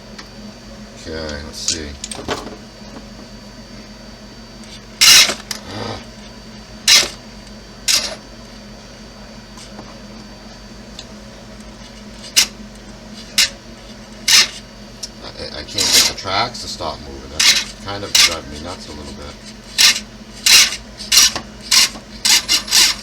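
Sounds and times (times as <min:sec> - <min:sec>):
steady low hum: 0:00.0 - 0:23.0
toy motor mechanical bursts: 0:05.0 - 0:06.0, 0:19.7 - 0:23.0.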